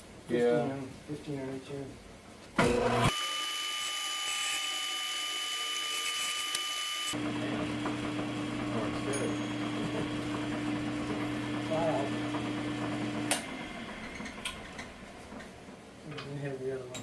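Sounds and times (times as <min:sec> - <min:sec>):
metal lathe whine and hiss: 0:03.1 - 0:15.3.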